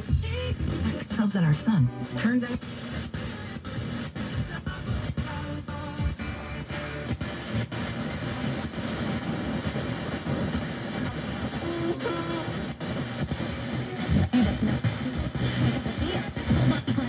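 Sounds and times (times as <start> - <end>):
radio broadcast: 0.0 - 17.0
static hiss: 0.0 - 17.0.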